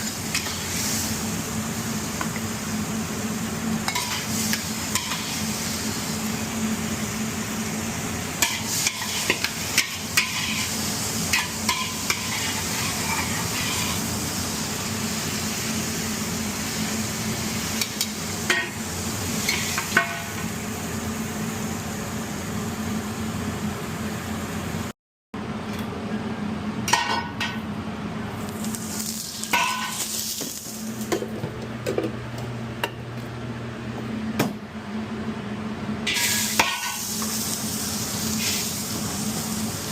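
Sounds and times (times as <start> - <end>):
food sizzling in a pan: 0.0 - 24.9, 28.5 - 31.1, 36.1 - 39.9.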